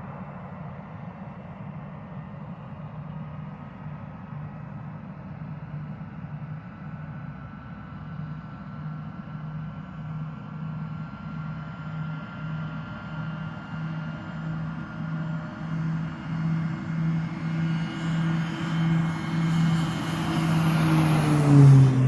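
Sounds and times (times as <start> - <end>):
airplane engine drone: 0.0 - 22.0.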